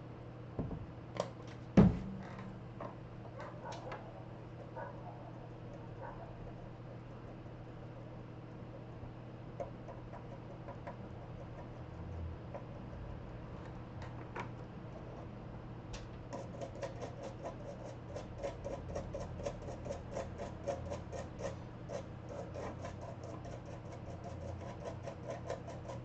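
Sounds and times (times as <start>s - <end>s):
brush scrubbing circuit board: 16.4s - 26.0s.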